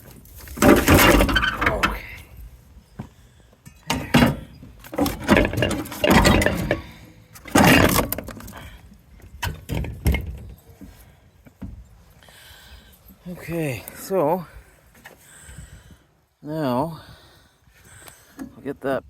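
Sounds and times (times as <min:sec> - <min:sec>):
metal scraping: 0:00.3 - 0:02.3, 0:03.7 - 0:08.6
metal banging and clattering: 0:00.5 - 0:02.3, 0:03.6 - 0:08.6.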